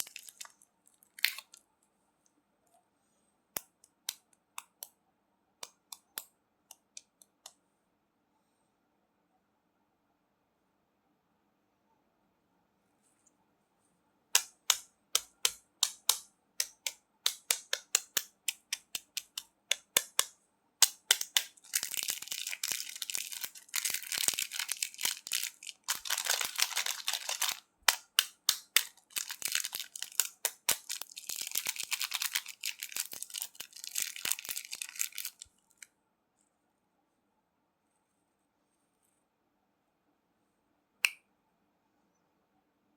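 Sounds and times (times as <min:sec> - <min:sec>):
candy crunching: 0:00.0 - 0:01.6, 0:20.8 - 0:35.8.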